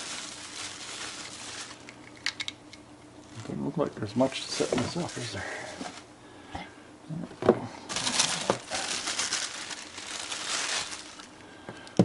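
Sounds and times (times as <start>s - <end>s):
plastic packaging crinkling: 0.0s - 2.4s, 3.2s - 6.1s, 7.9s - 12.0s.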